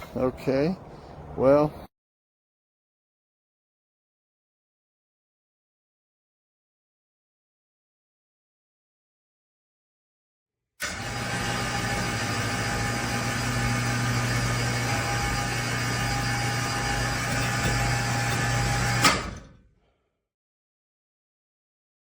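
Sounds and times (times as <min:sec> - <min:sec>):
electric winch motor humming: 0:10.8 - 0:19.5.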